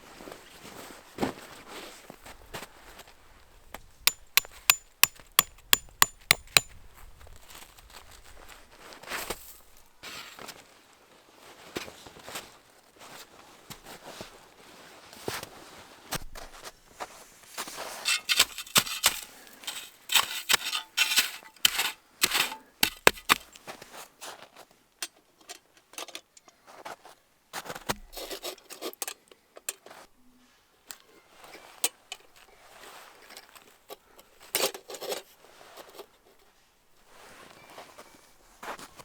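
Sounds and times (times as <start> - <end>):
handling clicks and taps: 4.1 - 6.7, 20.5 - 23.6
short scrapes or rustles: 17.0 - 24.0.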